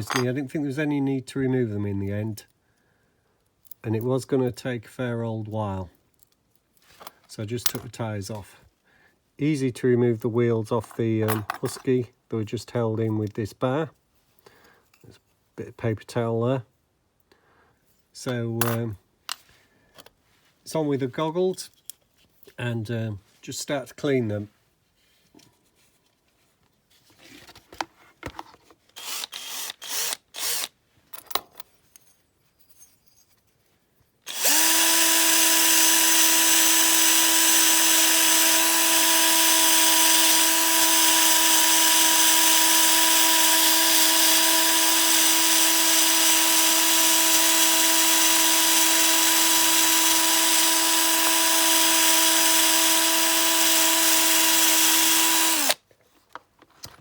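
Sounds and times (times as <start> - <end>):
rotary power tool spinning: 29.0 - 30.7, 34.3 - 55.8.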